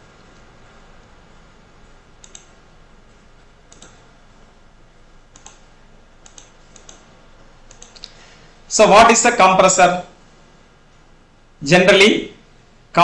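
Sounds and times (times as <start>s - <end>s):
low steady room hiss: 0.0s - 13.0s
faint sharp clicks: 7.6s - 8.2s.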